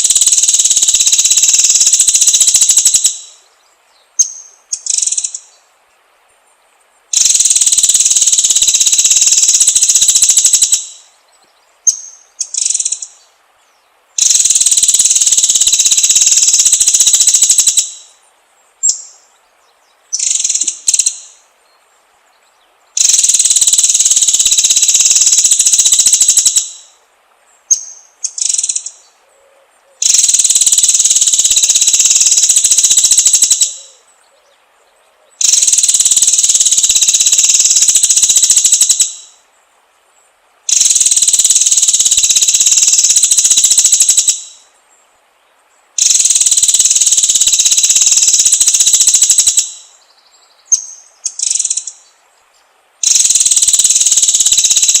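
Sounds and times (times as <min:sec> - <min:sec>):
buzzy high bird trills: 0:00.0 - 0:03.5, 0:07.1 - 0:11.2, 0:14.2 - 0:18.2, 0:20.1 - 0:21.4, 0:23.0 - 0:27.0, 0:27.7 - 0:29.1, 0:29.9 - 0:34.4, 0:35.4 - 0:39.4, 0:40.7 - 0:44.7, 0:46.0 - 0:52.1, 0:53.0 - 0:55.0.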